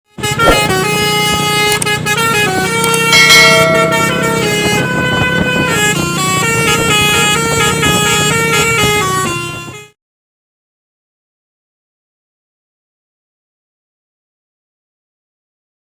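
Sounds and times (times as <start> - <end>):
multi-trumpet truck horn melody: 0.2 - 9.9.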